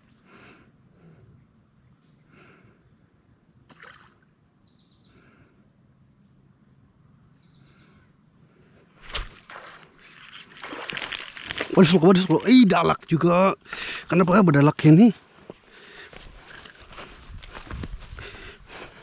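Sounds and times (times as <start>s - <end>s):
sudden thump or splash: 9.0s - 9.8s.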